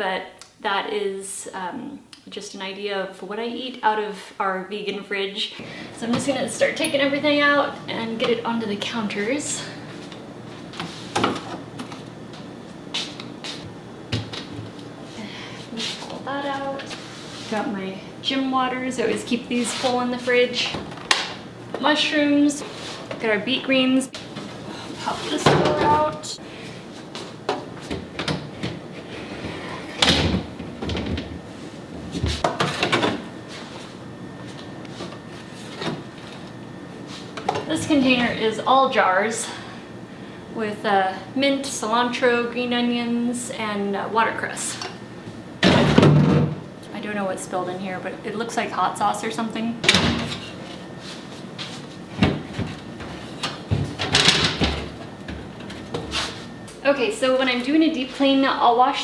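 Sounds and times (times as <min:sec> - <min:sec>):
refrigerator shelf scraping slide: 0:22.6 - 0:23.2, 0:24.4 - 0:26.1, 0:29.0 - 0:30.5, 0:55.6 - 0:56.6
containers clunking and knocking: 0:24.2 - 0:26.3, 0:32.2 - 0:33.3, 0:45.6 - 0:46.7, 0:52.1 - 0:56.1.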